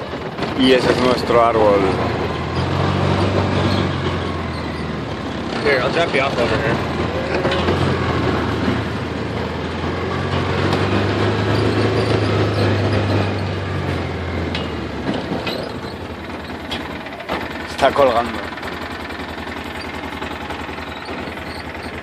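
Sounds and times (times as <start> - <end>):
chainsaw engine running: 0.0 - 22.0.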